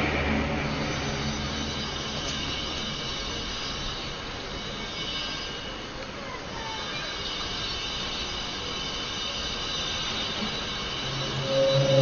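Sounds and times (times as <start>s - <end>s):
noisy metallic drone: 0.0s - 5.7s, 7.5s - 12.0s
faint whistles: 6.9s - 12.0s
high whining tones: 9.6s - 12.0s.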